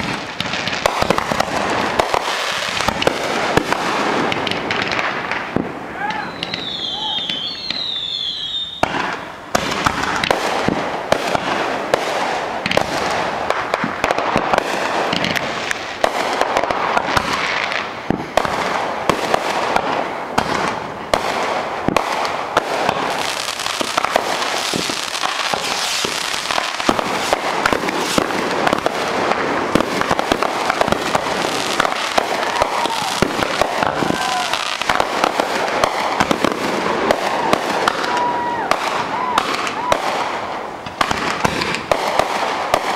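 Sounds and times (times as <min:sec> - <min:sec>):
fireworks crackling and banging: 0:00.0 - 0:42.9
firework whistle: 0:05.9 - 0:10.4, 0:31.1 - 0:36.4, 0:37.1 - 0:40.4.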